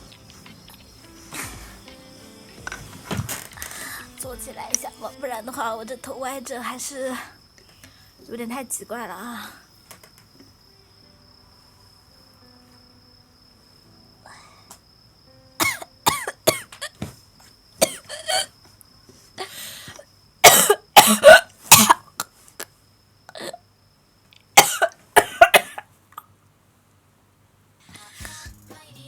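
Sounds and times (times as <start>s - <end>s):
person coughing: 20.4s - 22.1s, 24.6s - 25.8s.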